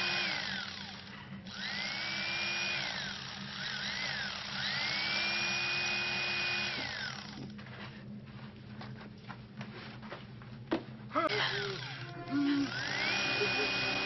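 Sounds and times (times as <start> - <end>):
chainsaw revving: 0.0 - 7.4, 11.4 - 14.0.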